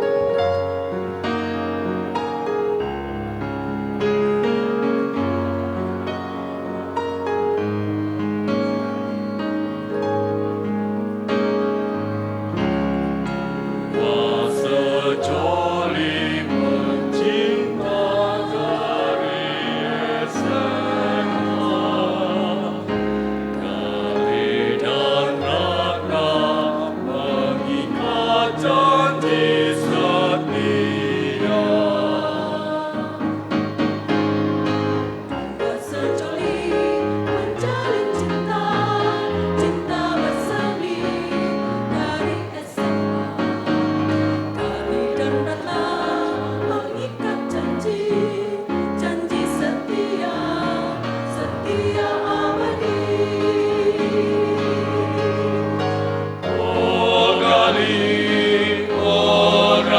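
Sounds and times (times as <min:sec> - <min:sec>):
choir singing: 0:12.5 - 0:59.9.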